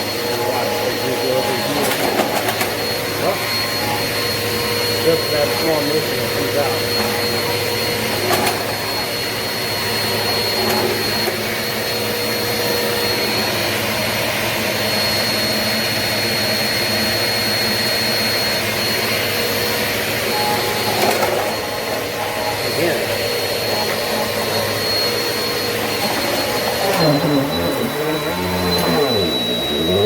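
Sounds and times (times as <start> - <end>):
vacuum cleaner running: 0.0 - 30.0
high whistle: 20.2 - 30.0.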